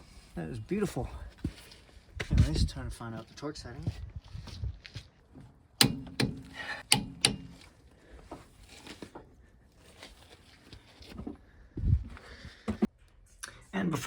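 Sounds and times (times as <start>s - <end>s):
sharp knocks: 5.8s - 7.6s
faint rustling and handling: 7.5s - 13.3s.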